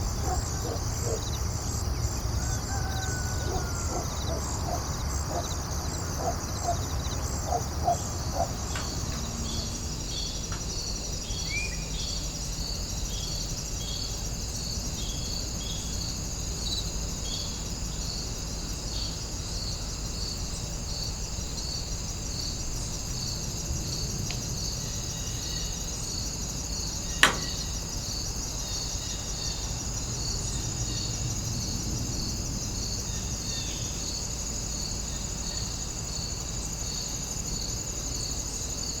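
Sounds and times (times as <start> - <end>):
crickets chirping: 0.0 - 39.0
sharp click: 27.2 - 27.8.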